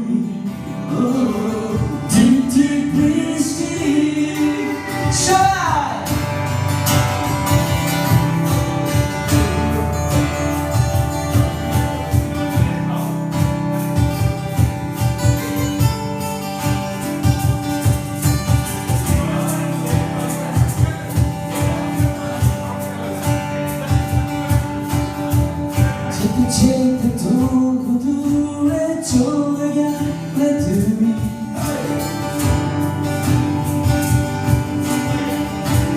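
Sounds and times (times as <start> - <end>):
acoustic guitar strumming: 0.0 - 35.9
held backing notes: 0.9 - 26.9.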